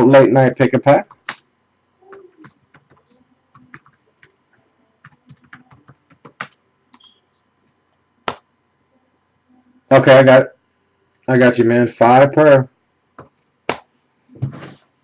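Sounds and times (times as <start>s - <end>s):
typing on computer keyboard: 2.1s - 4.4s, 5.0s - 7.1s.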